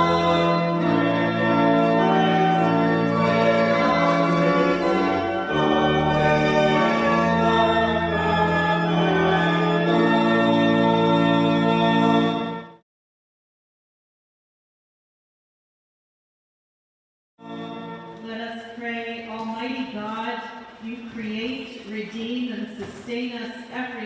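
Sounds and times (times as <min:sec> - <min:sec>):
organ playing sustained chords: 0:00.0 - 0:12.8, 0:17.4 - 0:21.2.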